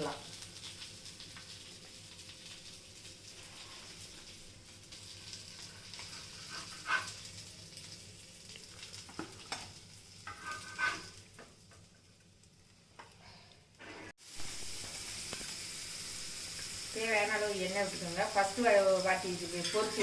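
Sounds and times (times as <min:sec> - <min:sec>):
fish sizzling in oil: 0:00.0 - 0:20.0
utensil scraping and knocking pan: 0:10.3 - 0:11.1.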